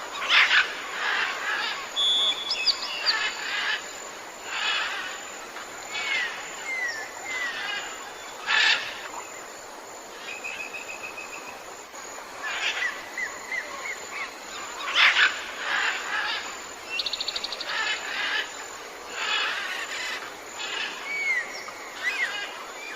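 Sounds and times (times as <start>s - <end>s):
bird trill: 2.0s - 3.3s
birds chirping and whistling: 2.0s - 3.3s.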